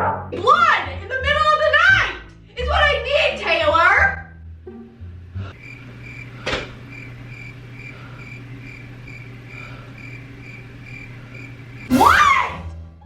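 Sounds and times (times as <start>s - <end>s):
cricket chirping: 5.5s - 12.6s.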